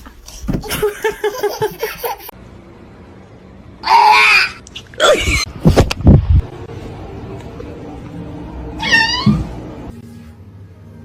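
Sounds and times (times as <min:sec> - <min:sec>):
person laughing: 0:00.6 - 0:02.3
person crying out: 0:03.8 - 0:05.5.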